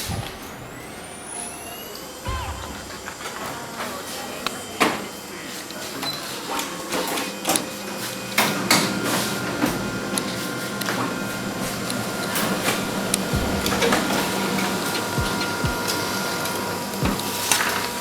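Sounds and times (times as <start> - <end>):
photocopier motor hum: 6.9 - 18.0.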